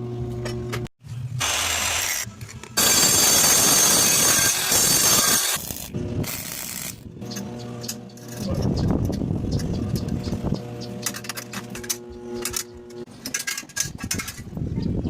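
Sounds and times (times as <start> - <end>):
saw blade cutting material: 1.4 - 7.4.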